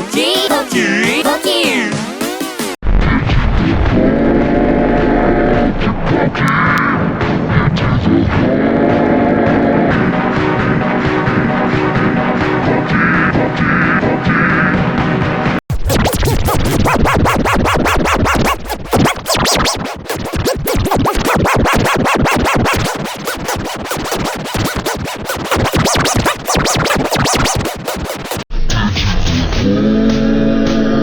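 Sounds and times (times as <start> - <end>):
different music: 0.0 - 2.8, 8.9 - 28.4
fast electronic remix music: 0.0 - 2.8, 15.6 - 28.5.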